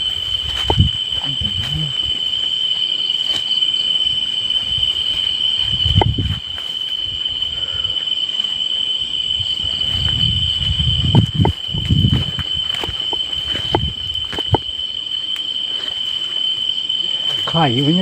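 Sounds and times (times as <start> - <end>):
high-pitched insect drone: 0.0 - 18.0
low rumbling thumps: 5.7 - 6.5, 9.8 - 12.7
bamboo stems creaking: 9.5 - 18.0.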